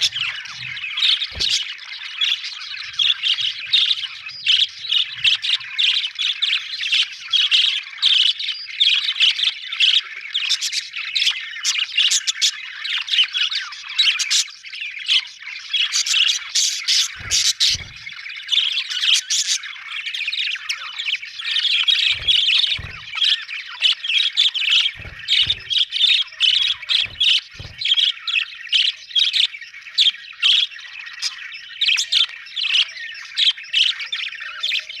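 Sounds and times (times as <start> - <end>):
budgerigars chattering and squawking: 0.0 - 35.0
soft low thumps: 22.1 - 23.3, 24.9 - 25.9, 26.5 - 28.0.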